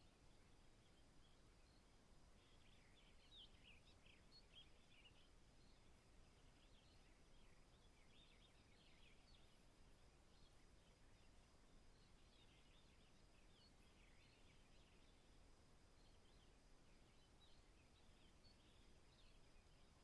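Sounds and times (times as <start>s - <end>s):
distant birds chirping: 0.0s - 20.0s
low background hiss: 0.0s - 20.0s.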